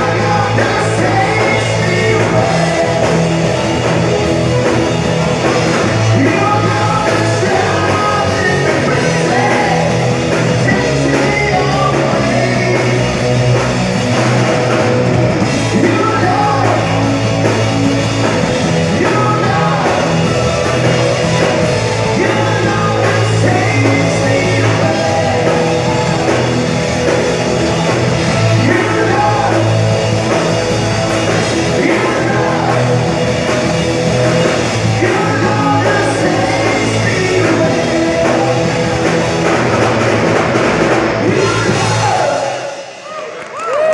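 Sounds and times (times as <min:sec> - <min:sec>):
person singing: 0:00.0 - 0:43.4
rock band playing loudly: 0:00.0 - 0:43.9.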